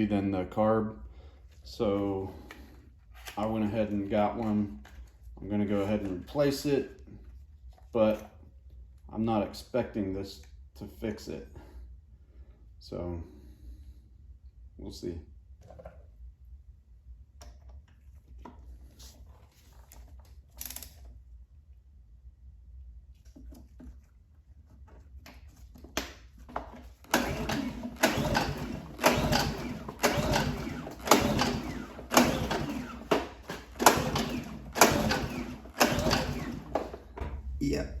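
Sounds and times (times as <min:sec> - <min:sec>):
generator recoil starter pulled: 0:26.0 - 0:37.2
engine cranking: 0:26.7 - 0:37.2.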